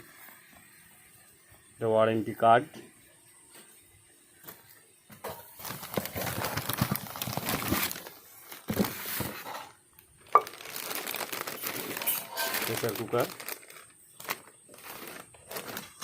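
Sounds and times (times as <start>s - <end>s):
packaging rustling and crinkling: 5.6s - 16.0s.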